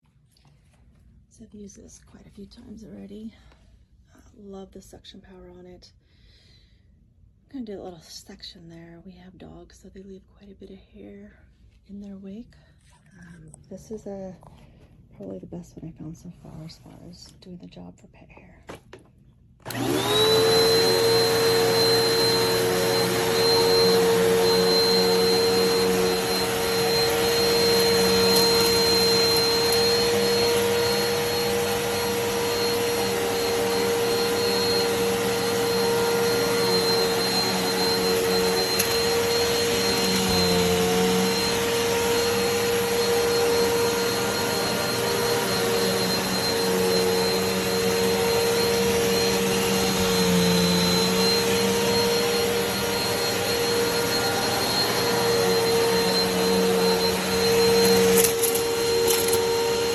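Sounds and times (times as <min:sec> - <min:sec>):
vacuum cleaner motor whine: 0:19.6 - 0:59.9.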